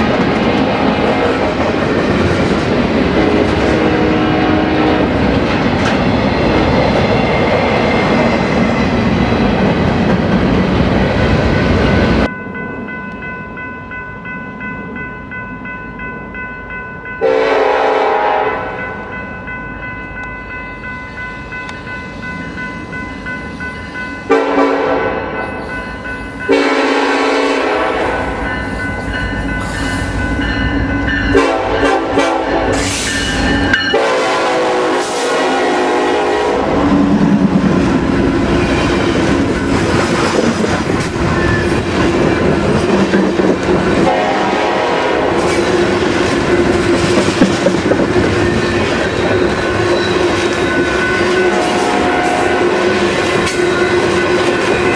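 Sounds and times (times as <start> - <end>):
train rumble and wheel clatter: 0.0 - 54.9
train air horn blasts: 3.2 - 5.2, 17.2 - 19.0, 24.3 - 25.7, 26.5 - 28.5, 31.3 - 37.1, 44.0 - 46.7, 50.7 - 54.9.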